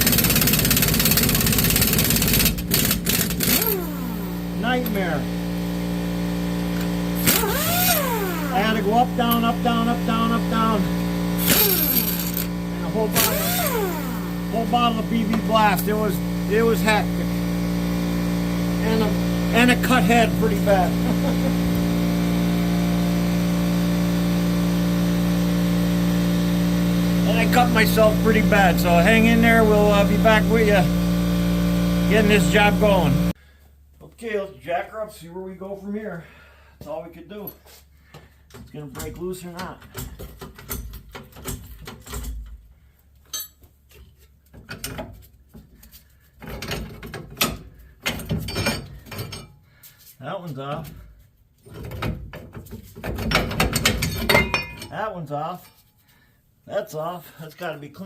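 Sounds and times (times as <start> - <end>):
air compressor motor hum: 0.0 - 33.4
hand tools clanking on metal: 43.2 - 45.1, 46.5 - 49.6, 53.0 - 55.0.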